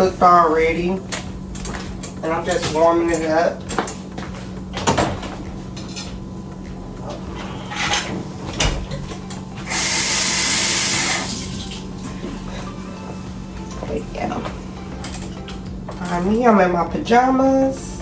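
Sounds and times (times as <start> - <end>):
steady low hum: 0.0 - 18.0
loud rushing hiss: 9.7 - 11.6.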